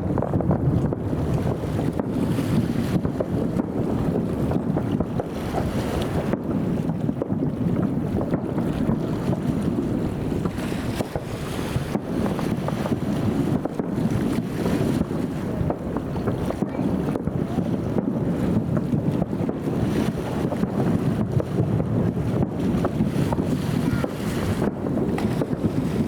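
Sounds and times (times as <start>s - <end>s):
fireworks booming: 0.0s - 26.0s
wind buffeting microphone: 0.0s - 26.0s
sharp fireworks cracks: 7.1s - 25.8s.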